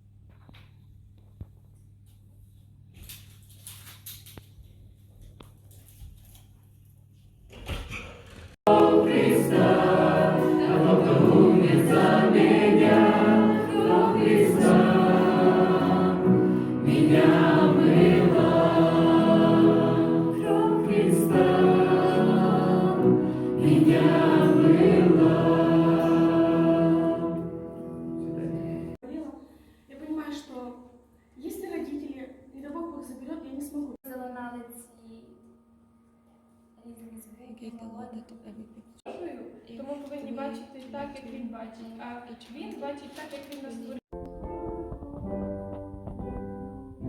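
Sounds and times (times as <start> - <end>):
choir singing: 8.6 - 29.0.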